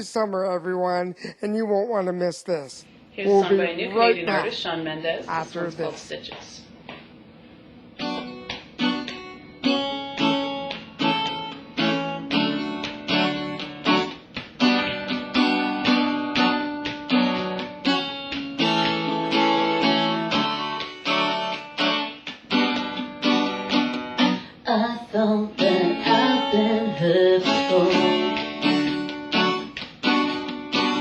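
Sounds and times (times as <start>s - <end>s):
acoustic guitar chords: 7.8s - 31.0s.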